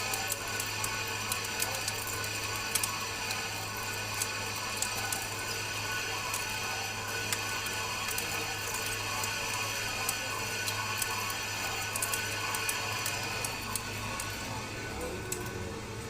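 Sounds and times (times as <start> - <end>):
metal lathe humming: 0.0 - 16.0
irregular sharp ticks: 6.3 - 14.4.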